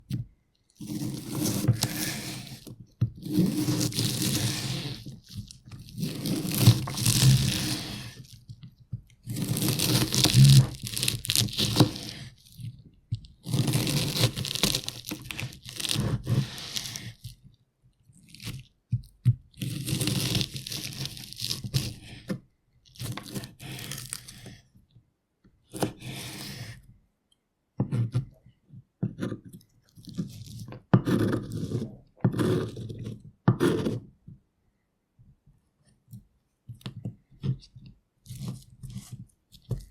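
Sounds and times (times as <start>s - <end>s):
knife chopping onion: 25.7s - 26.6s, 29.0s - 29.4s, 30.3s - 34.1s.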